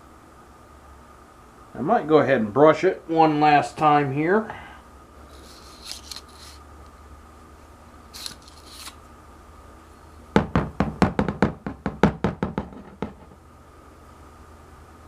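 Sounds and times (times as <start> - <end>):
hard gun parts knocking: 10.4 - 13.4.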